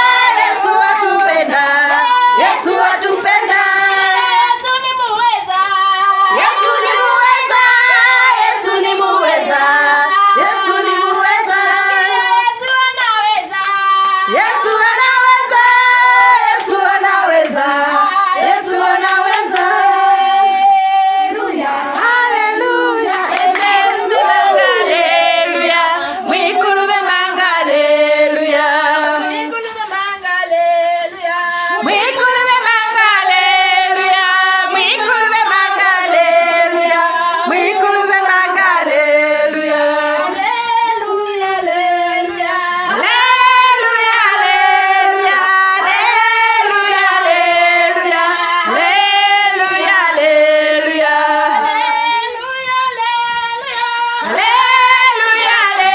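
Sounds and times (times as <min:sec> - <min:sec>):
women singing together: 0:00.0 - 0:55.9
hand claps: 0:11.5 - 0:15.0, 0:19.0 - 0:19.8, 0:22.3 - 0:24.9.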